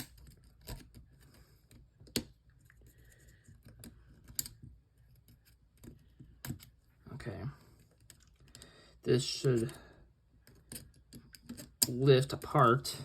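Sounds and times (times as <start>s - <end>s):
small tools clicking and tapping: 10.4s - 12.6s.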